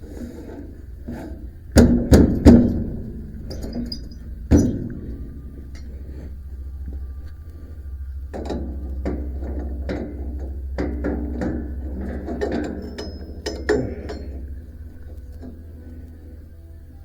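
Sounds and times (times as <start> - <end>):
steady low hum: 0.0 - 17.0
metallic tool clanks and clicks: 3.5 - 4.9, 11.4 - 14.6.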